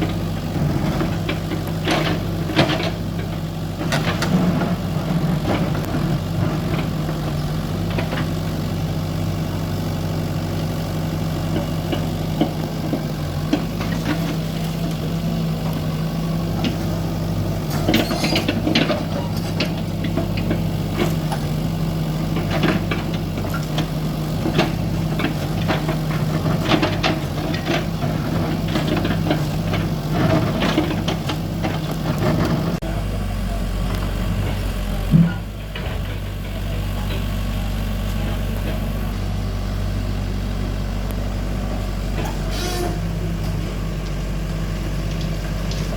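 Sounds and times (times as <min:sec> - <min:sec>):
soil loading knocks and clatter: 0:00.0 - 0:08.7, 0:11.4 - 0:32.8, 0:41.0 - 0:45.9
excavator diesel engine running: 0:00.0 - 0:45.9.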